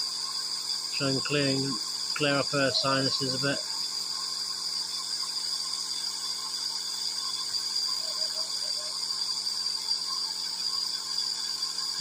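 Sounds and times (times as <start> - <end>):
nebuliser whining and hissing: 0.0 - 12.0.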